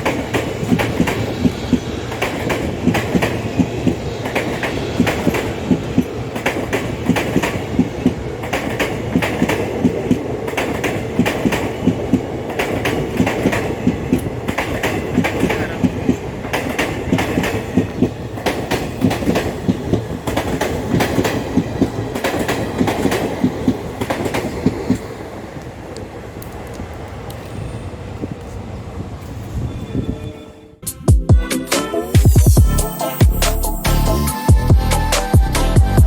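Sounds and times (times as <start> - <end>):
train wheels clattering: 0.0 - 28.6
train rumble: 0.0 - 30.8.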